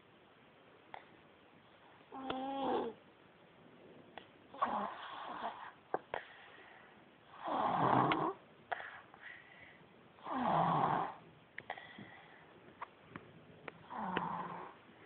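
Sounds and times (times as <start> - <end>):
baby snoring: 2.1 - 3.0, 4.5 - 5.8, 7.3 - 8.4, 10.2 - 11.2, 13.8 - 14.8.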